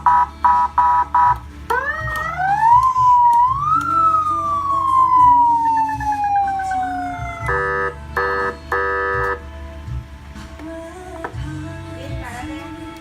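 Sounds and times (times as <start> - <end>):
buzzing horn blasts: 0.0 - 1.4, 7.1 - 9.5
electronic siren rising and falling: 0.0 - 9.4.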